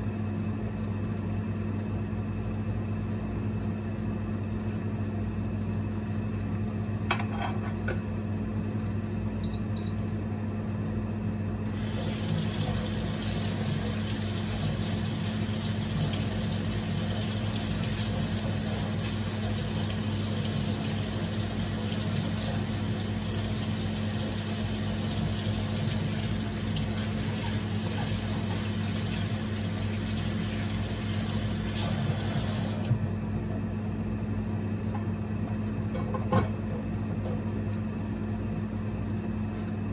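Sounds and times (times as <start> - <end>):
low electrical hum: 0.0 - 39.9
tap water running into sink: 11.8 - 33.0.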